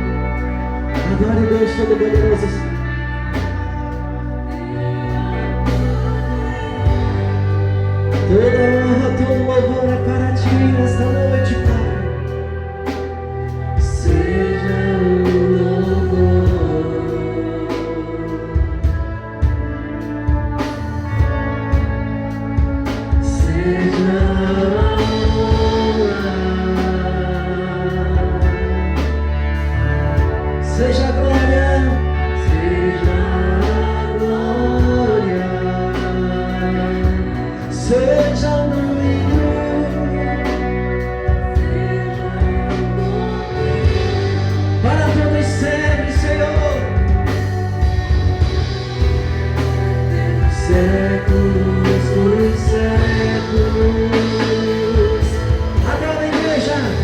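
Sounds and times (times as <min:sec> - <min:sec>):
person singing: 0:00.0 - 0:57.0
worship band playing: 0:00.0 - 0:57.0.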